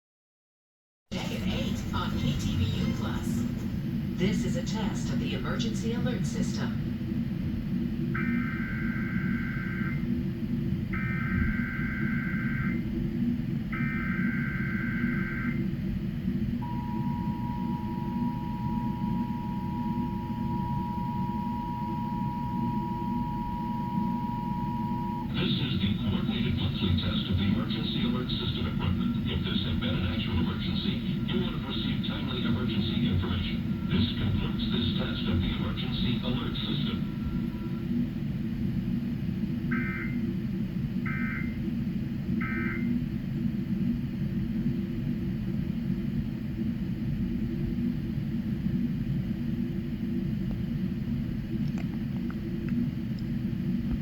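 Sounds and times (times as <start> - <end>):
steady low hum: 1.1 - 54.0
two-tone attention signal: 11.0 - 12.8, 13.8 - 15.6, 16.6 - 25.3, 42.4 - 42.9.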